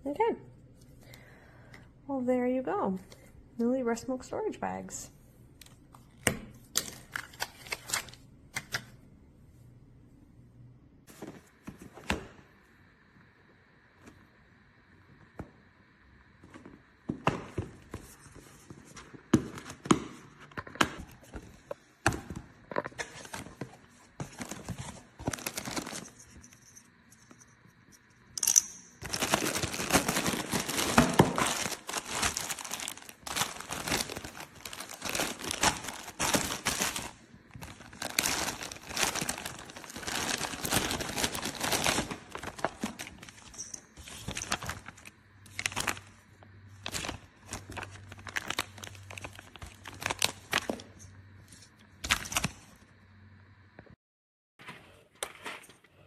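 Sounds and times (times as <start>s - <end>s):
thin plastic crinkling: 22.7s - 26.5s, 28.4s - 52.6s.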